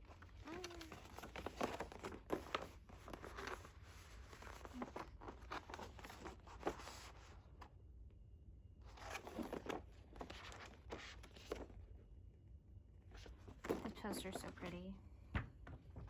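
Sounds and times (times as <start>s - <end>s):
paper and cardboard rustling: 0.1s - 7.6s, 8.9s - 11.8s.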